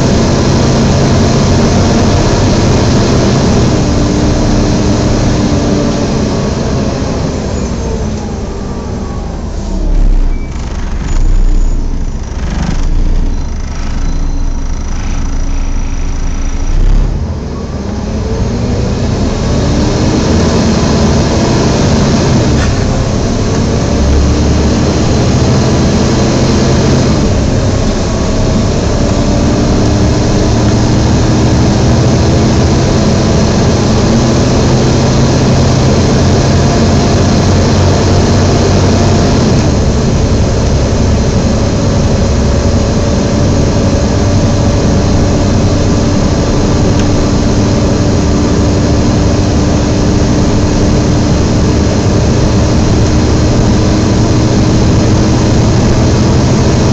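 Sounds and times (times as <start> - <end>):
bus engine running: 0.0 - 56.9
cooling fan whooshing whine: 26.8 - 56.9.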